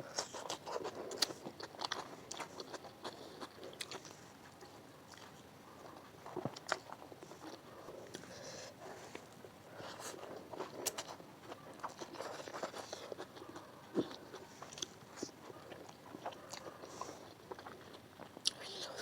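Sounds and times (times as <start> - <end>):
person chewing and biting food: 0.0 - 8.4, 9.2 - 19.0.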